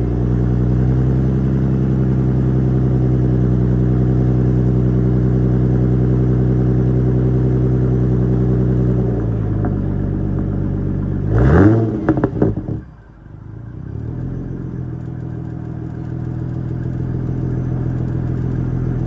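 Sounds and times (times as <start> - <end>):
car engine idling and revving: 0.0 - 19.0
exhaust pops and crackles: 9.3 - 11.2.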